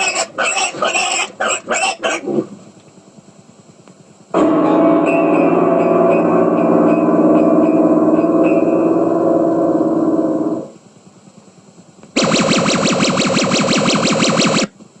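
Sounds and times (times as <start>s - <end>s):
rapidly pulsing buzz: 0.0s - 14.7s
low buzzing drone: 4.3s - 10.8s.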